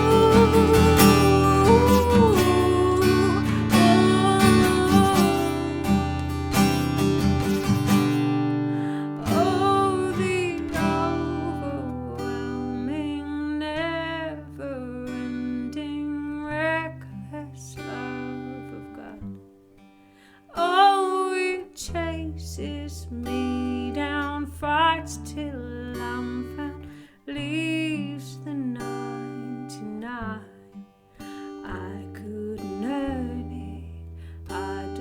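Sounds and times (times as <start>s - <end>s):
person singing wordless melody: 0.0s - 7.4s, 8.7s - 19.2s
acoustic guitar strumming: 0.0s - 21.5s.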